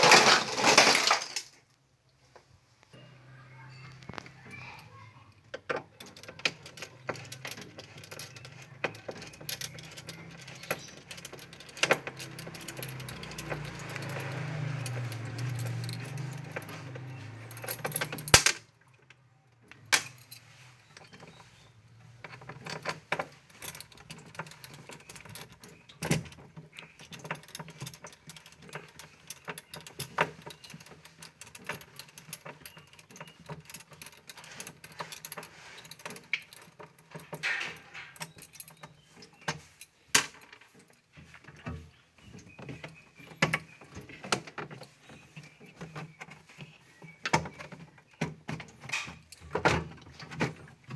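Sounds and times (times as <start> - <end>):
ice chipping clicks and clinks: 0.0 - 1.6.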